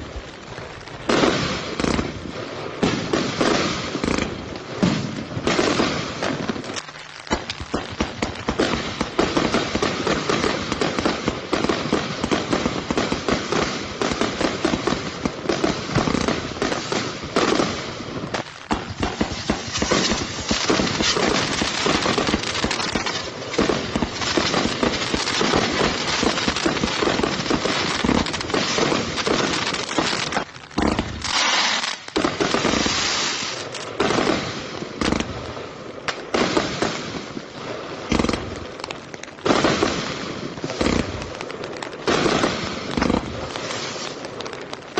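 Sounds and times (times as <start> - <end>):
fireworks bangs and pops: 0.0 - 44.9.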